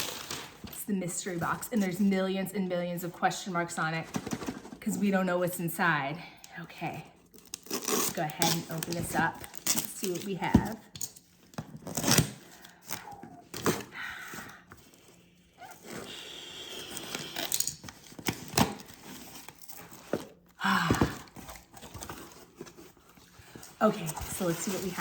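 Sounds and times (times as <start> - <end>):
packaging being torn open: 7.3 - 10.3, 11.1 - 13.9, 16.7 - 20.0
paper crinkling: 21.3 - 25.0.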